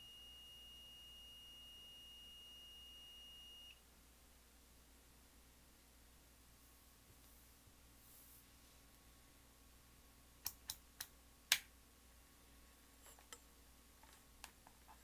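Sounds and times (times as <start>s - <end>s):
faint steady low hum: 0.0s - 15.0s.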